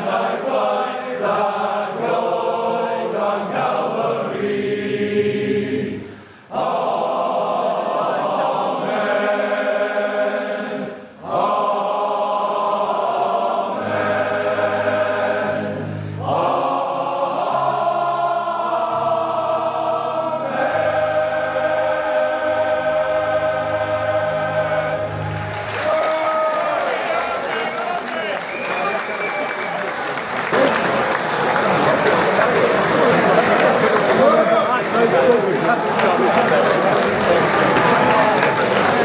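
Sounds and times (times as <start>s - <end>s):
male voice choir singing: 0.0s - 26.1s, 31.6s - 39.0s.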